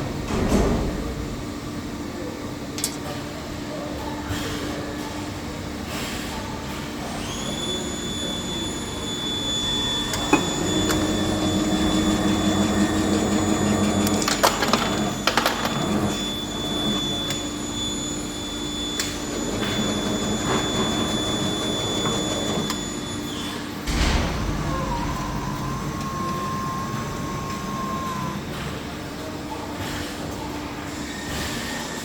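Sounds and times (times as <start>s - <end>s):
machine humming with high whine: 6.5s - 32.0s.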